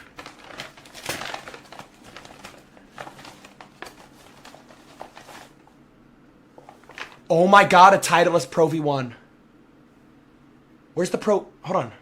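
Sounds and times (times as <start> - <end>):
packaging rustling and crinkling: 0.0 - 5.8, 6.6 - 7.3.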